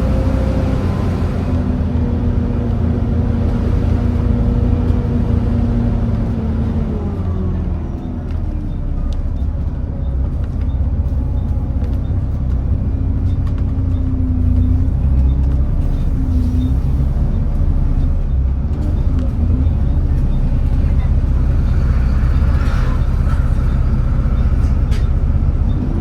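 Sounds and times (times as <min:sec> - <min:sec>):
bus engine droning: 0:00.0 - 0:26.0.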